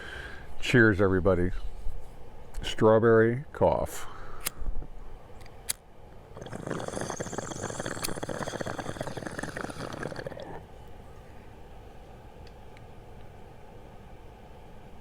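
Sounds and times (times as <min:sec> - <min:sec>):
water bubbling in a bong: 0:06.3 - 0:10.8.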